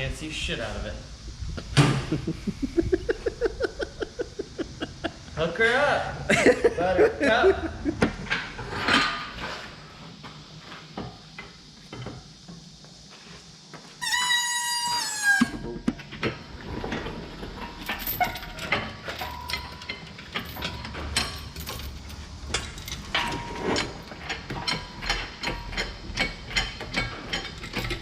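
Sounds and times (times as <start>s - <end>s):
hand tools clanking on metal: 17.4s - 28.0s.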